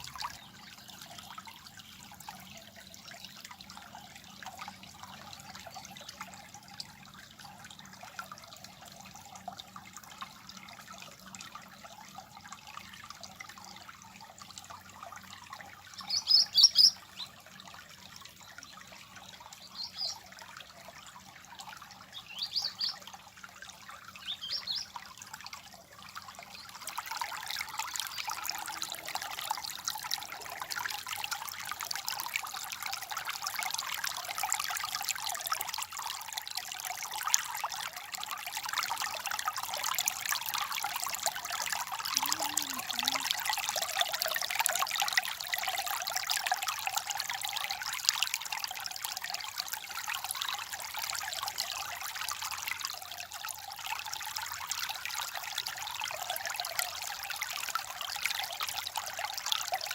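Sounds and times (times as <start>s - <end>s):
stream water babbling: 0.0s - 59.9s.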